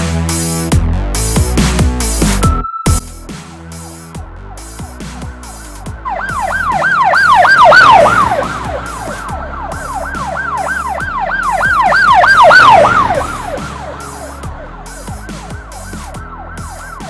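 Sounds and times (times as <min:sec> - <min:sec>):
emergency vehicle siren: 0:04.5 - 0:17.0.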